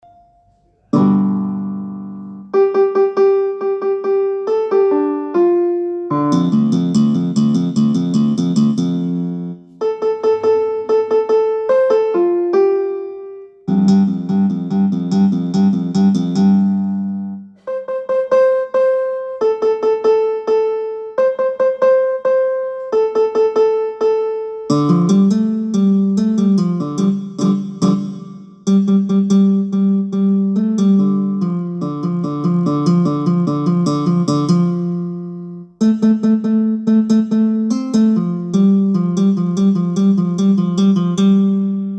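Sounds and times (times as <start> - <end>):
piano-like ringtone melody: 0.0 - 41.9
keyboard ringtone melody: 17.6 - 22.7.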